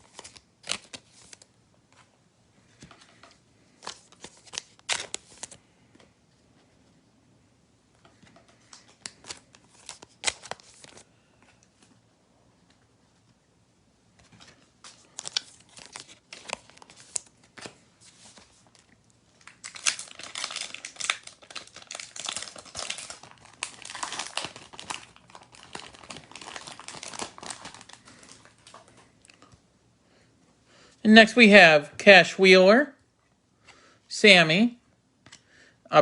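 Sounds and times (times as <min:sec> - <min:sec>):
plastic wrapper crinkling and tearing: 0:00.0 - 0:01.5, 0:03.8 - 0:05.6, 0:08.6 - 0:11.1, 0:14.4 - 0:29.4.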